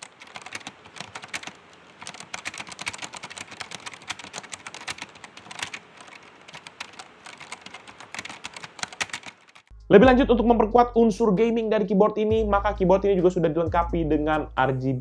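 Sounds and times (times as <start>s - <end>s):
mechanical keyboard key clicks: 0.2s - 9.6s.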